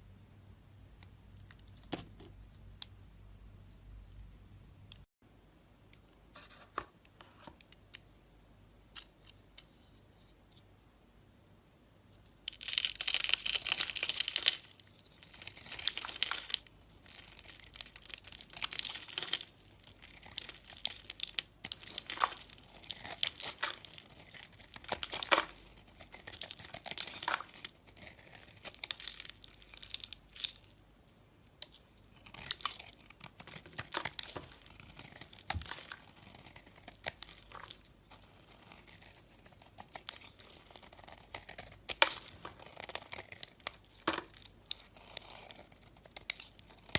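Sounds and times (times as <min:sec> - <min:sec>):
dry soap crackling and crumbling: 0:12.4 - 0:46.9.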